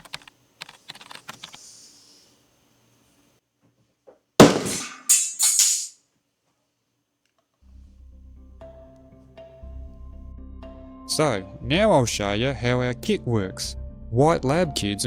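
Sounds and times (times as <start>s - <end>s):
phone screen smashing impact: 4.4s - 5.9s
music: 7.6s - 15.0s.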